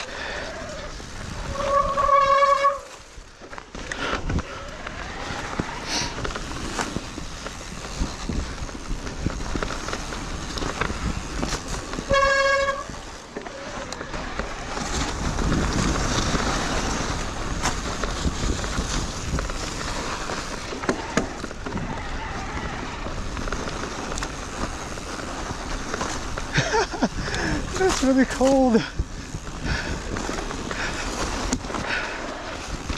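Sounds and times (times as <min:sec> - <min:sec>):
rough riding noise with knocks: 0:00.0 - 0:32.9
wind noise: 0:00.0 - 0:32.9
vehicle horn toot: 0:12.1 - 0:12.9.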